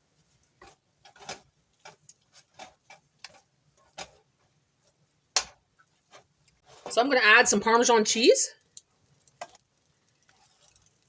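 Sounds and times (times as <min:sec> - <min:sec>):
utensil clicking against pot: 0:08.7 - 0:11.0.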